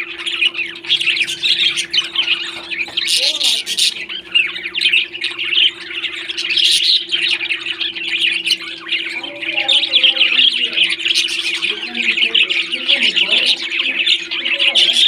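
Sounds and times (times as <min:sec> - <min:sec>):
parrots chirping and chattering: 0:00.0 - 0:15.0
steady low hum: 0:00.0 - 0:15.0.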